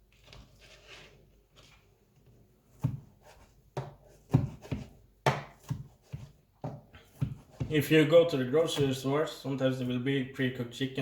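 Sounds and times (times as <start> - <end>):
knife slicing and scraping: 0.1 - 1.8
knife knocking on cutting board: 3.8 - 7.8.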